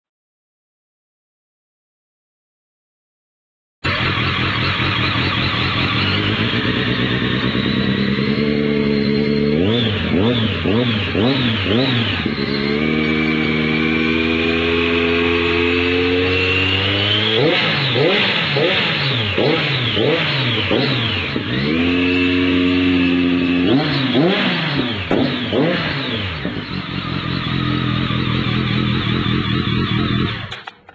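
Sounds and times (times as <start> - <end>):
motorcycle engine idling: 3.8 - 14.6, 18.6 - 30.9.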